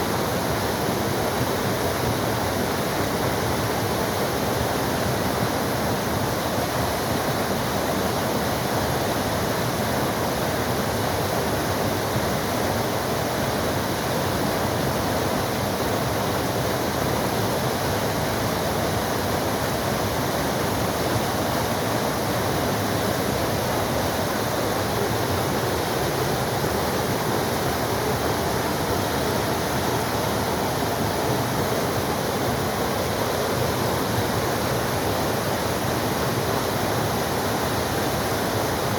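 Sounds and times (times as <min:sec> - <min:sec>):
waterfall roaring: 0:00.0 - 0:38.9.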